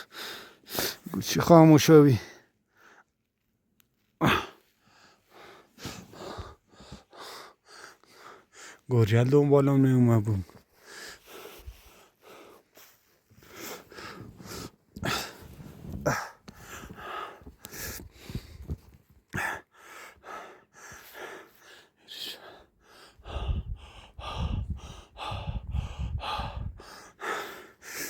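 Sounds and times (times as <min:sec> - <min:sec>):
person gasping for breath: 0:04.2 - 0:08.8, 0:13.4 - 0:18.7, 0:19.3 - 0:28.0.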